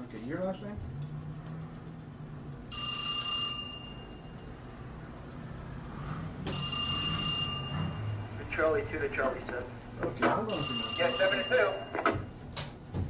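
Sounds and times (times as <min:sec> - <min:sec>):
low steady hum: 0:00.0 - 0:13.0
telephone bell ringing: 0:02.7 - 0:04.4, 0:06.5 - 0:08.2, 0:10.5 - 0:12.0.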